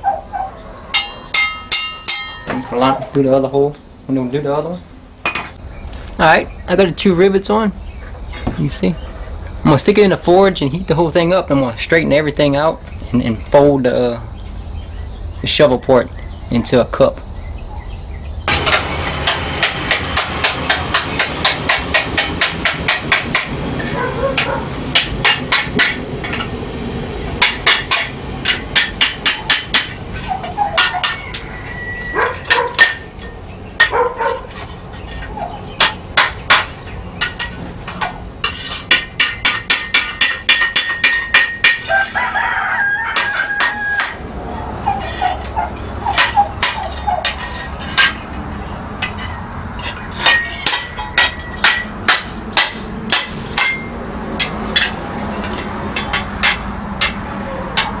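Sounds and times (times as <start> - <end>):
hammer on hot steel on anvil: 0.9 - 2.7, 18.5 - 26.6, 27.4 - 34.0, 35.7 - 44.2, 44.9 - 58.0
rooster crowing: 30.4 - 32.8, 41.8 - 45.4.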